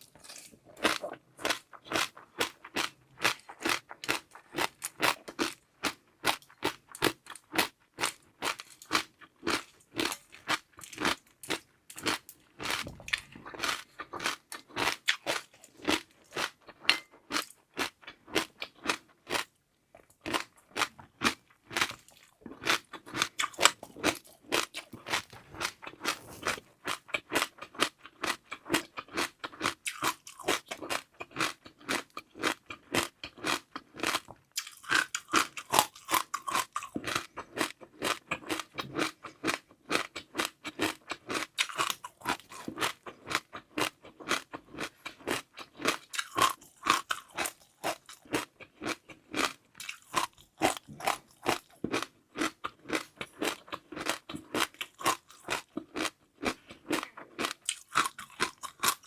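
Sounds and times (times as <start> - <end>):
person chewing crunchy food: 0.0 - 59.0.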